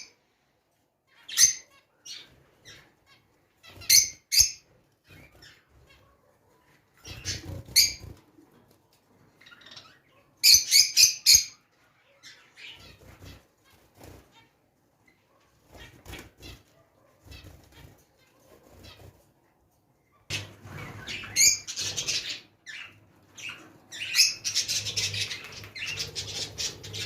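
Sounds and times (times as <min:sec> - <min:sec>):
birds chirping: 0:01.1 - 0:19.3, 0:20.0 - 0:27.0
sharp bird calls: 0:20.2 - 0:27.0.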